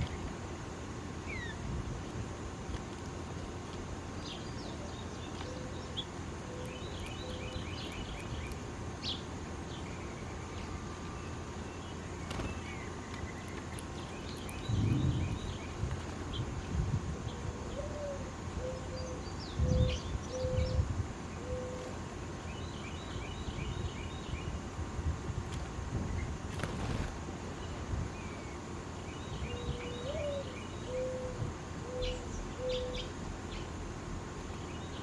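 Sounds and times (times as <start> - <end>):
low background rumble: 0.0 - 22.6
small birds chirping: 0.0 - 24.8, 26.1 - 35.0
low bump: 14.7 - 16.6.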